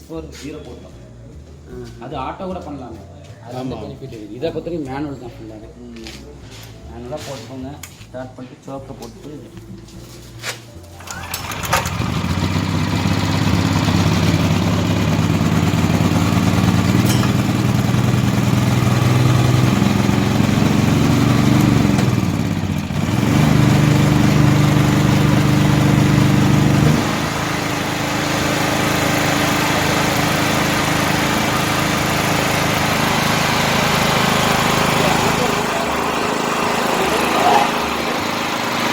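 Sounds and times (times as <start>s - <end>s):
portable generator engine running: 11.0s - 38.9s.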